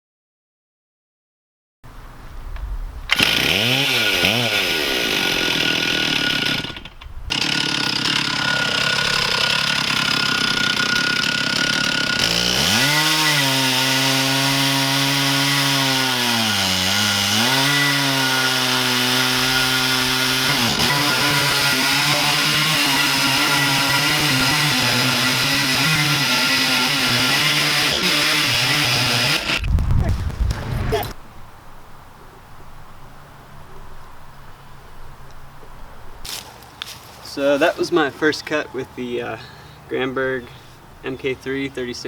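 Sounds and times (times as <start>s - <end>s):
chainsaw ripping through a log: 3.1s - 31.2s.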